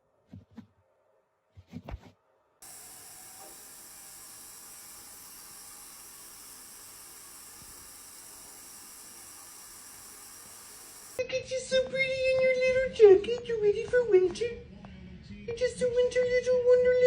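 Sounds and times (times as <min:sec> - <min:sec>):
steady hiss: 0:02.6 - 0:11.2.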